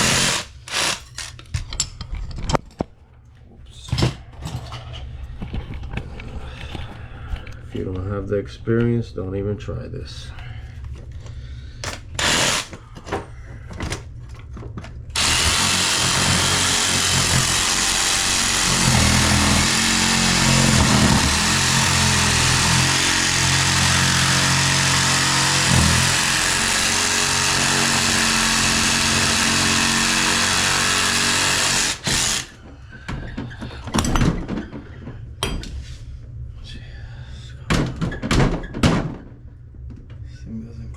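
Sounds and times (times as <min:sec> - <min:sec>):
power saw cutting metal: 0:00.0 - 0:01.3, 0:12.2 - 0:12.7, 0:15.2 - 0:32.6.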